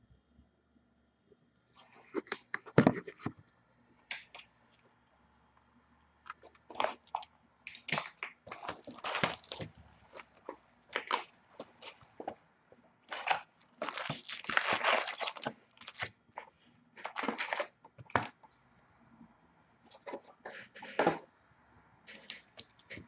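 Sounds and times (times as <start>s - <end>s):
packaging crinkling and tearing: 6.5s - 12.4s, 13.1s - 16.1s, 17.0s - 18.4s.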